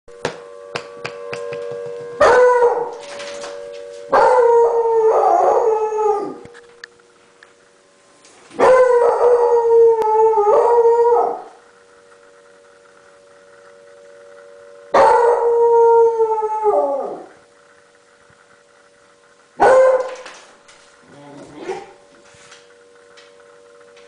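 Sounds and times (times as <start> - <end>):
tornado warning siren: 0.1 - 24.0
dog howling: 2.2 - 3.0, 4.1 - 6.5, 8.6 - 11.6, 15.0 - 17.4.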